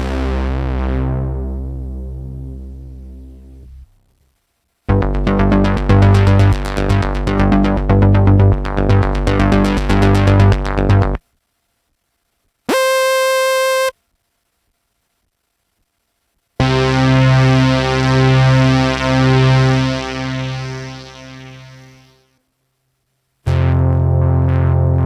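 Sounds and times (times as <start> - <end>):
long low pulsing synth note: 4.9 - 11.2
synthesizer sequenced pattern: 4.9 - 11.2
bright held synthesizer note: 12.7 - 13.9.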